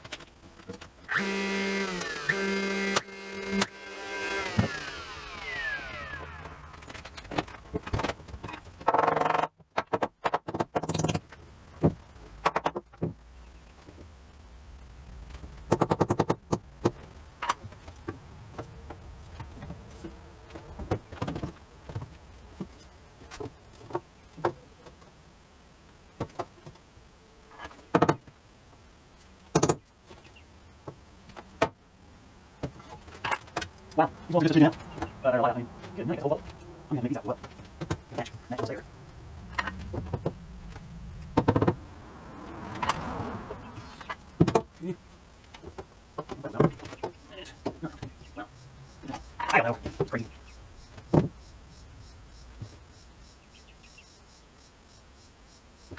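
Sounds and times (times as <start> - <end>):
short buzzing bursts: 1.1 - 6.8
knocks and clicks of tools: 15.7 - 17.6, 29.5 - 29.8.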